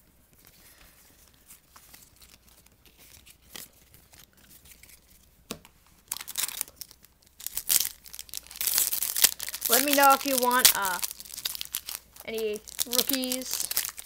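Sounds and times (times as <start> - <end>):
foil wrapper tearing: 6.1 - 14.0
trading cards ticking: 9.1 - 11.1, 12.2 - 14.0.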